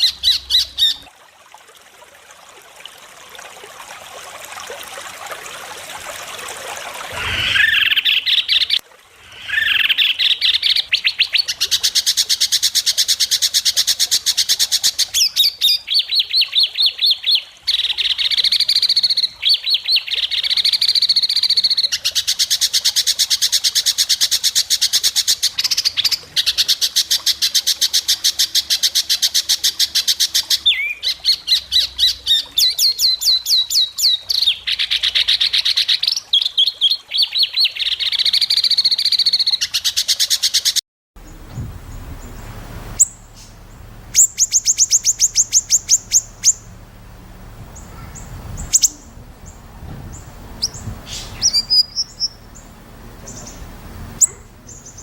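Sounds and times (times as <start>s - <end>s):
low hum: 41.2s - 55.0s
songbird rapid repeated notes: 42.1s - 46.8s, 50.2s - 55.0s.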